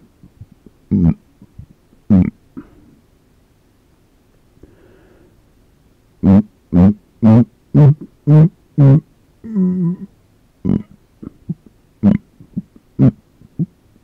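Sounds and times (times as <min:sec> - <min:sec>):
man burping: 0:00.9 - 0:01.2, 0:08.8 - 0:13.7.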